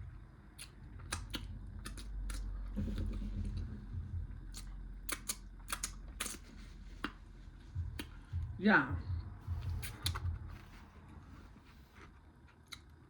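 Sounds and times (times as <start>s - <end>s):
lips and tongue smacking: 0.6s - 3.1s, 4.5s - 7.2s
chewing: 0.6s - 3.7s, 4.5s - 7.2s.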